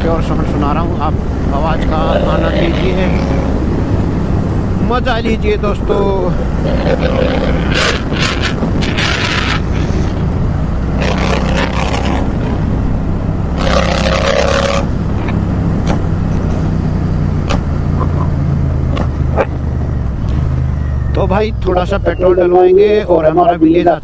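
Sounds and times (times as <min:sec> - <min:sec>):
motorcycle engine exhaust note: 0:00.0 - 0:22.5.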